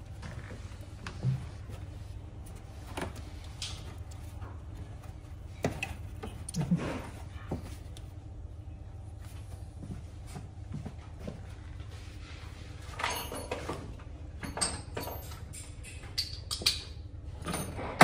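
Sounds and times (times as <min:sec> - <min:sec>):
steady low hum: 0:00.0 - 0:18.0
clicks and knocks of tools: 0:13.0 - 0:18.0.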